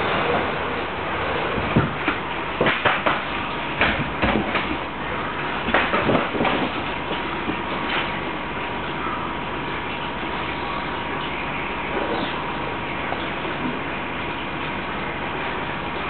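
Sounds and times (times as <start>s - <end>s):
cats knocking in cardboard box: 1.7s - 4.8s, 5.7s - 6.9s.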